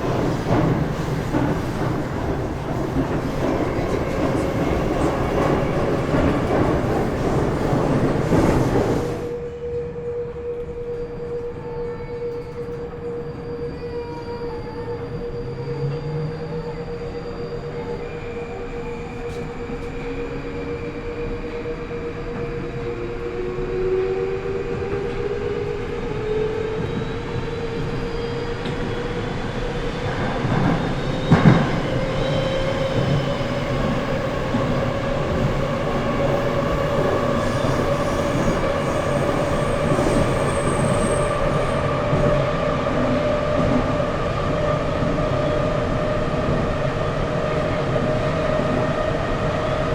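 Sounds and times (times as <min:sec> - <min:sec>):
wheels rumbling on rail: 0:00.0 - 0:09.5, 0:21.2 - 0:49.9.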